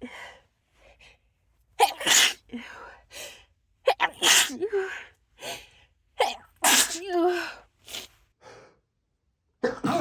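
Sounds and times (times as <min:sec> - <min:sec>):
person sneezing: 0:01.8 - 0:02.4, 0:04.1 - 0:04.6, 0:06.6 - 0:07.1.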